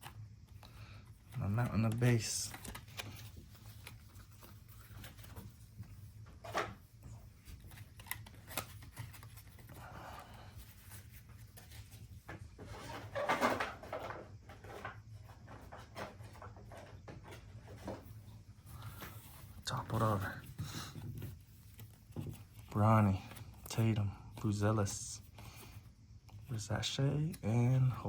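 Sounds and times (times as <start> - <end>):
trading cards clicking and rustling: 0.0 - 5.8, 7.4 - 18.2
steady low hum: 0.0 - 28.0.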